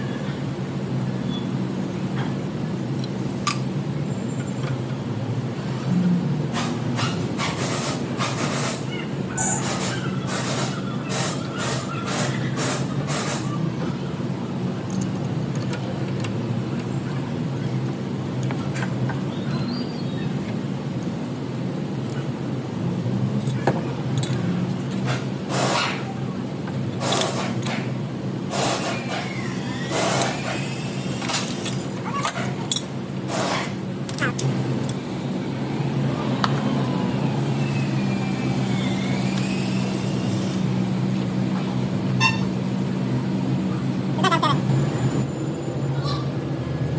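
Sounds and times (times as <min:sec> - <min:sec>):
car engine humming: 0:29.1 - 0:46.9.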